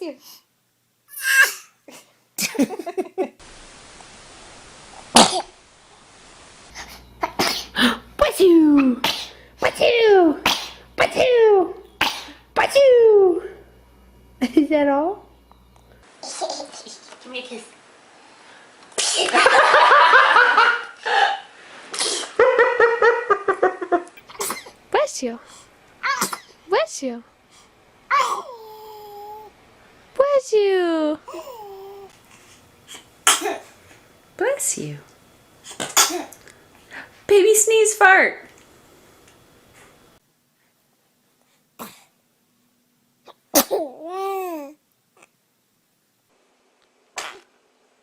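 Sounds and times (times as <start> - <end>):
faint steady hiss: 0.0 - 12.8, 13.4 - 48.0
baby sneezing: 1.1 - 2.0, 5.1 - 5.5, 6.8 - 8.0, 8.8 - 11.4, 12.0 - 12.4, 19.0 - 19.4, 21.9 - 22.4, 24.3 - 24.8, 26.0 - 26.6, 28.1 - 29.5, 32.9 - 33.7, 35.7 - 36.4, 43.2 - 44.8, 47.2 - 47.5.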